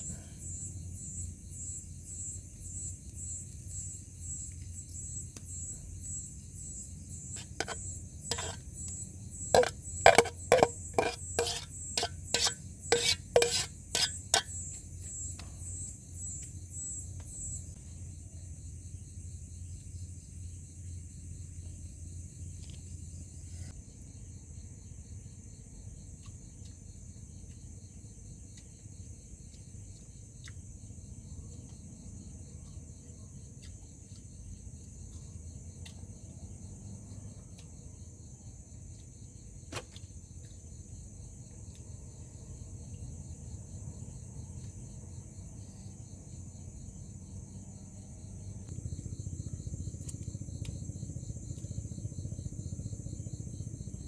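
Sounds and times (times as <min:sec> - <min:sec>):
fast pulsing insect trill: 0:00.0 - 0:22.3
night insects chirring: 0:00.0 - 0:54.0
metal utensils clinking: 0:09.6 - 0:14.5.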